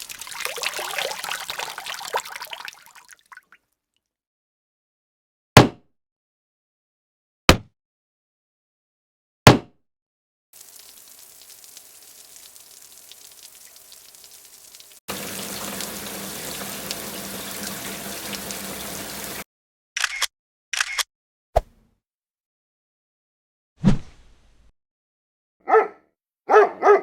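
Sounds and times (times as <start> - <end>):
hiss like running water: 0.0 - 2.8, 10.6 - 19.4
sharp clicks: 20.0 - 21.1.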